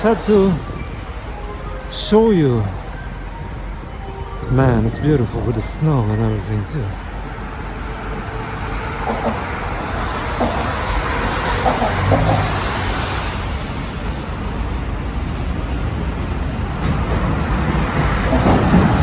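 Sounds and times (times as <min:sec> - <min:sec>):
passing vehicles rushing: 0:07.1 - 0:14.5.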